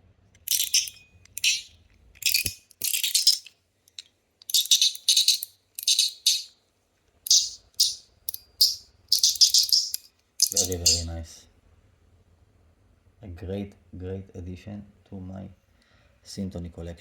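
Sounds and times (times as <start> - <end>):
metal fidget slider rattling: 0.4 - 6.5, 7.3 - 11.1.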